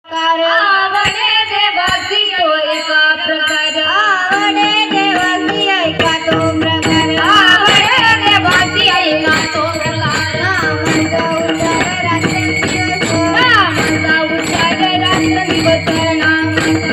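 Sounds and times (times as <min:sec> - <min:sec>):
woman singing devotional melody: 0:00.1 - 0:16.9
small hand cymbals: 0:01.0 - 0:16.9
drum beat: 0:04.3 - 0:16.9.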